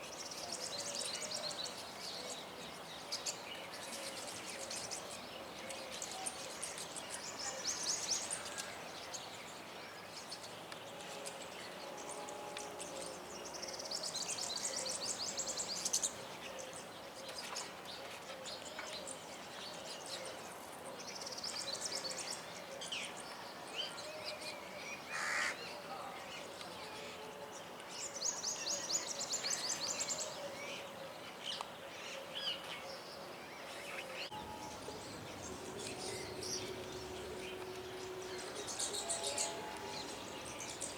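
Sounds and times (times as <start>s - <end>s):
songbirds twittering: 0.0s - 40.9s
bird chirps: 34.3s - 40.9s.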